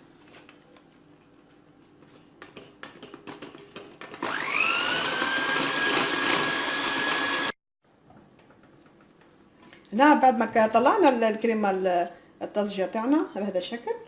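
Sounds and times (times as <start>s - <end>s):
electric mixer whining: 4.2s - 7.6s.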